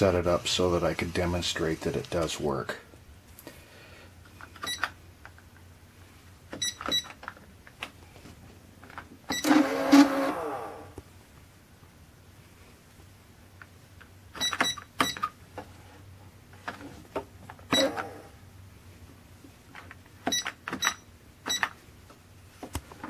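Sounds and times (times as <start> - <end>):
cash register key beeps: 4.6 - 4.9, 6.6 - 7.2, 9.3 - 10.1, 14.4 - 15.3, 17.7 - 18.2, 20.3 - 21.7.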